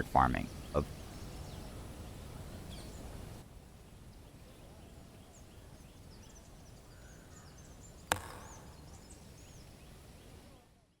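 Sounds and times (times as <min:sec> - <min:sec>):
faint outdoor ambience: 0:00.0 - 0:11.0
small bird chirps: 0:00.4 - 0:11.0
sharp knock: 0:08.1 - 0:08.8.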